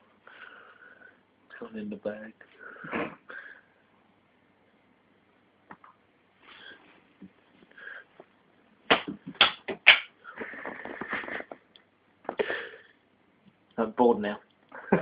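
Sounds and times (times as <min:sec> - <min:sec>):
sharp knocks: 0:08.9 - 0:10.1.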